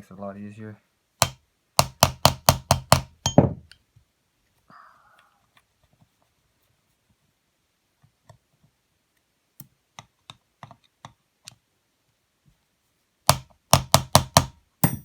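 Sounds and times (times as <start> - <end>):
screwdriver tapping on metal: 1.2 - 3.8.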